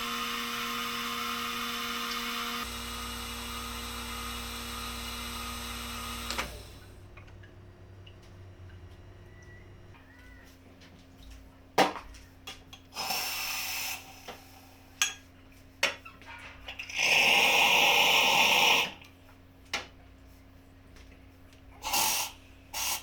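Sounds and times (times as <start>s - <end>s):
espresso machine humming: 0.0s - 9.9s, 16.9s - 19.0s
hissing spray: 21.8s - 23.0s.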